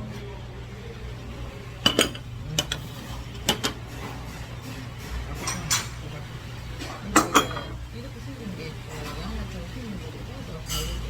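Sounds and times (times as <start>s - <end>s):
dishes and cutlery clinking: 1.8s - 6.2s, 6.8s - 7.8s, 8.9s - 9.5s, 10.6s - 11.0s.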